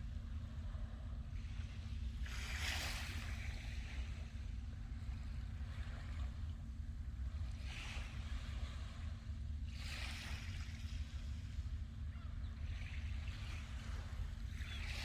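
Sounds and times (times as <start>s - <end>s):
steady low rumble: 0.0s - 15.0s
sea waves breaking: 0.8s - 4.3s, 7.3s - 11.7s.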